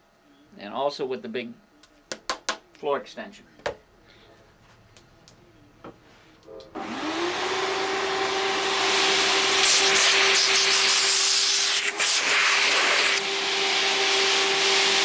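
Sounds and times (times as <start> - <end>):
vacuum cleaner running: 6.7 - 15.0.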